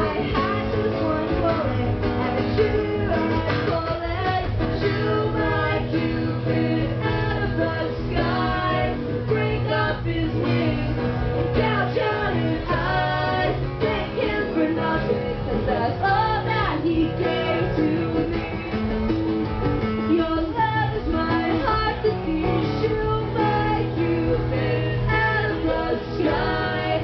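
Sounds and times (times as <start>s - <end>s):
woman singing: 0.0s - 19.1s, 20.0s - 27.0s
acoustic guitar playing: 0.0s - 27.0s.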